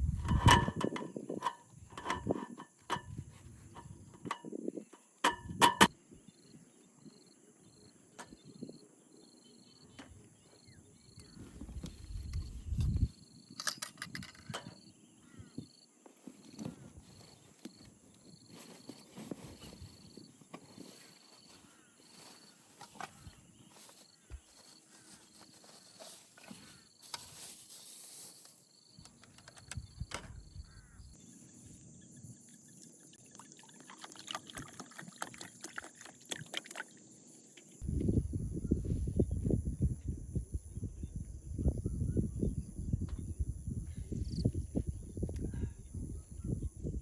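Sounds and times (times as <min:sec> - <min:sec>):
insects chirping: 0:00.2 - 0:47.0
small clicks and knocks: 0:13.6 - 0:14.8, 0:29.0 - 0:30.4.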